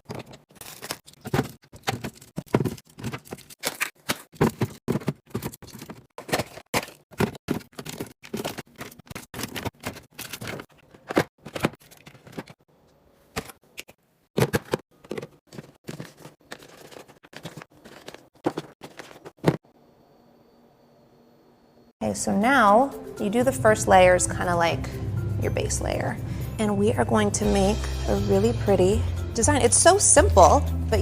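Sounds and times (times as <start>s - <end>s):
items clicking and knocking: 0.0s - 12.6s, 13.3s - 19.6s.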